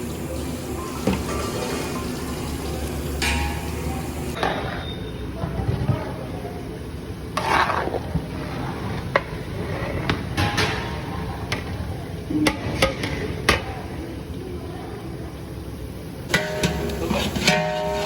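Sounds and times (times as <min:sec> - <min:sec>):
low kitchen noise: 0:00.0 - 0:18.0
metal ladle scraping in pot: 0:16.3 - 0:18.0.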